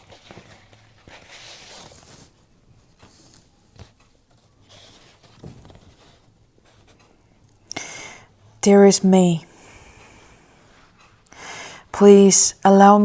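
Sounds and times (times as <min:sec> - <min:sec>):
paper rustling and crinkling: 0:00.0 - 0:07.1.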